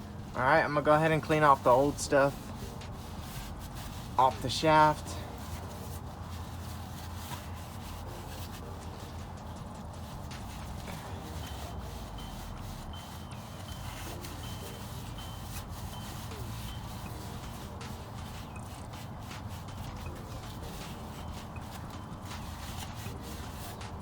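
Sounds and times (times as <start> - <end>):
rag wiping grease off metal: 0.0 - 24.0.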